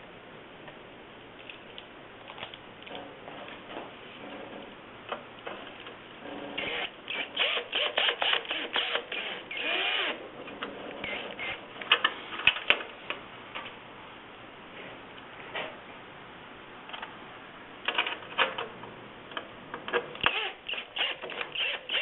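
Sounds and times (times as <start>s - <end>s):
power driver driving screws: 6.6s - 10.2s, 20.2s - 22.0s.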